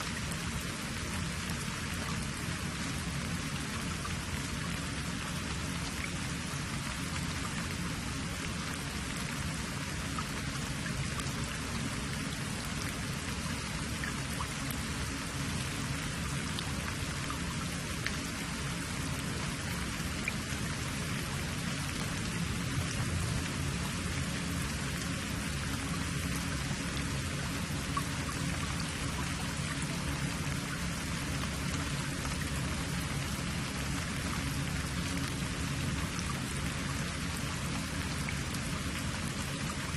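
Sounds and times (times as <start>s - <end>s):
rain-like hiss: 0.0s - 39.9s
faint ticks: 18.0s - 18.4s, 27.8s - 32.6s.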